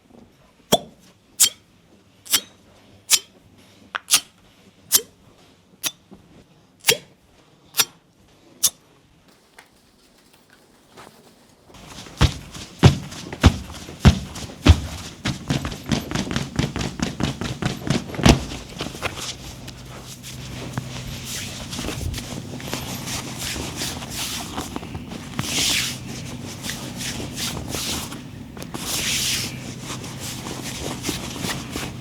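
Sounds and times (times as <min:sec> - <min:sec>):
rustling: 0:09.3 - 0:32.0
heavy thumps: 0:11.8 - 0:23.8.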